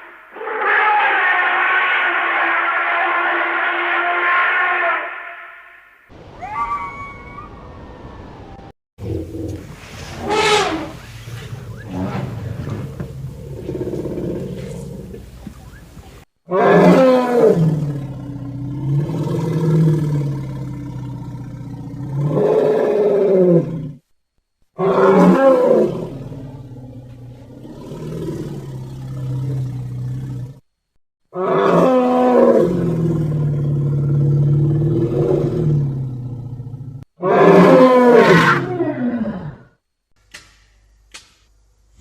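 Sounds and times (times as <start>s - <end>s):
low animal calls: 0.0s - 17.2s.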